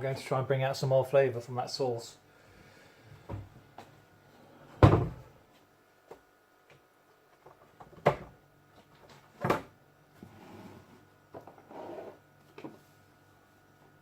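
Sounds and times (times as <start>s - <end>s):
cupboard doors thudding: 4.8s - 5.2s.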